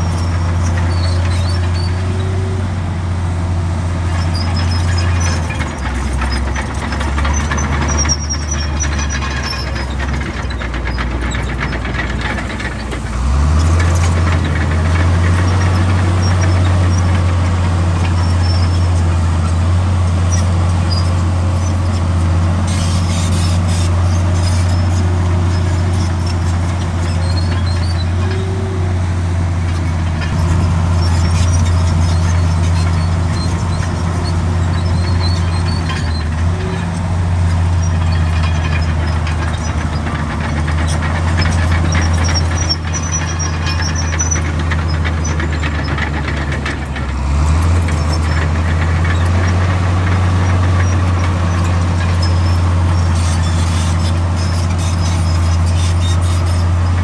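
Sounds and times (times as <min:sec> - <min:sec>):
faint high squeaks: 0:00.0 - 0:02.6, 0:20.2 - 0:28.9, 0:29.7 - 0:57.0
bulldozer diesel engine running: 0:00.0 - 0:57.0.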